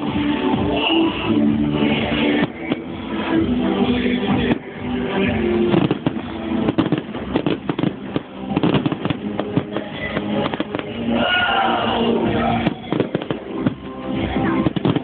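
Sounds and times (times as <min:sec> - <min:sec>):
fireworks bangs and crackling: 0:00.0 - 0:15.0
music playing: 0:00.0 - 0:15.0.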